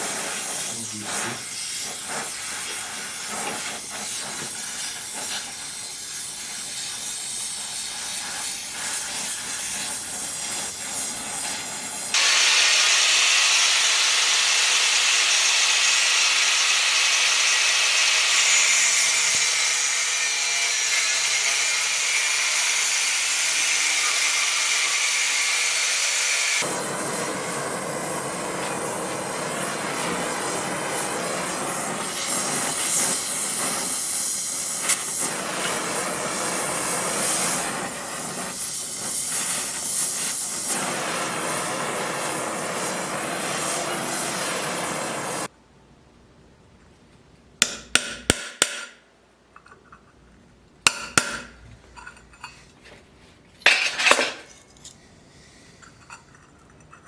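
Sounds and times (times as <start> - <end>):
power tool cutting wood: 12.1 - 31.7.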